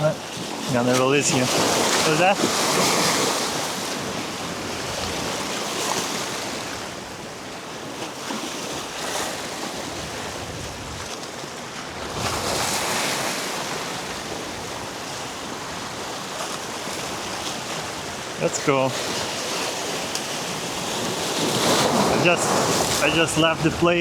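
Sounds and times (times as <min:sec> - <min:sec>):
surf washing against rocks: 0:00.0 - 0:24.0
wind on microphone: 0:09.1 - 0:11.2, 0:20.7 - 0:24.0.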